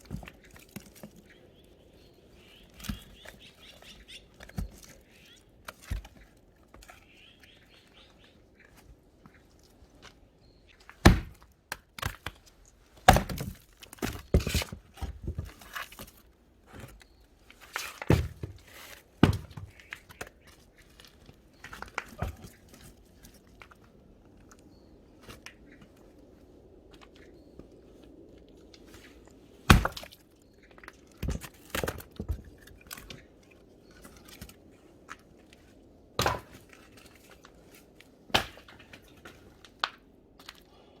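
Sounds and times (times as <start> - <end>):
firewood knocking and cracking: 10.9 - 12.4, 13.0 - 16.9, 18.0 - 20.5, 29.7 - 33.2, 36.2 - 37.2, 38.3 - 40.6.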